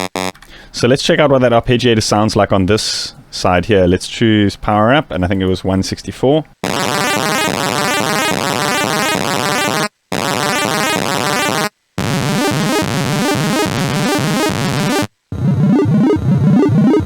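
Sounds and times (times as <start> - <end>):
chiptune synth arpeggio: 6.6 - 17.0.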